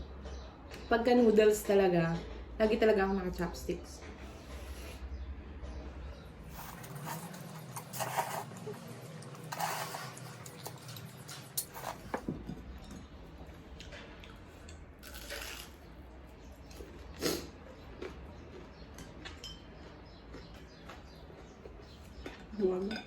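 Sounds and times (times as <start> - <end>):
person chewing and crunching food: 6.5 - 12.2, 13.5 - 15.8, 16.6 - 22.5.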